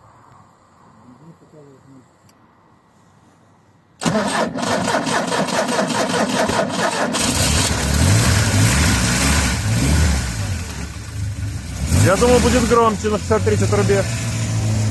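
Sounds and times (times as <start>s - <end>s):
engine starter cranking: 4.0s - 8.6s
car engine running: 7.1s - 14.9s.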